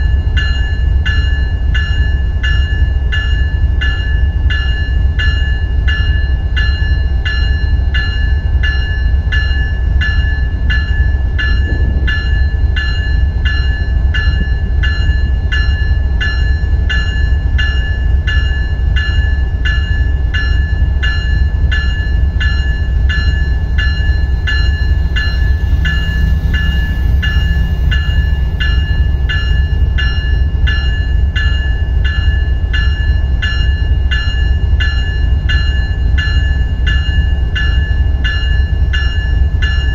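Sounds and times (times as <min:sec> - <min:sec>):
locomotive electronic bell ringing: 0:00.0 - 0:39.9
loud low rumble: 0:11.4 - 0:15.6.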